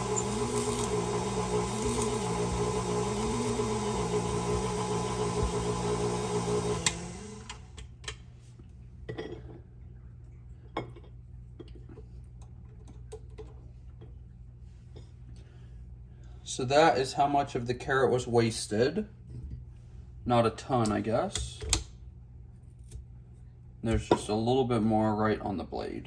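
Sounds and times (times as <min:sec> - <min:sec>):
stand mixer motor humming: 0:00.0 - 0:07.7.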